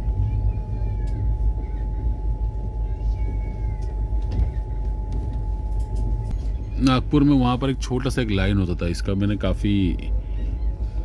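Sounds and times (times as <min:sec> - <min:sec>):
thin steady whine: 0:00.0 - 0:11.0
train rumbling on rails: 0:00.0 - 0:11.0
faint high squeals: 0:10.1 - 0:11.0.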